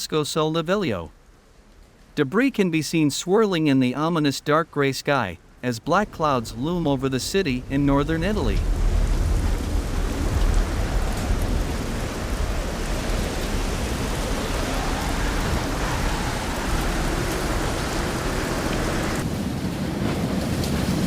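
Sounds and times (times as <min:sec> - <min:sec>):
heavy rain: 0:05.2 - 0:21.0
deep low thunder rumble: 0:06.0 - 0:21.0.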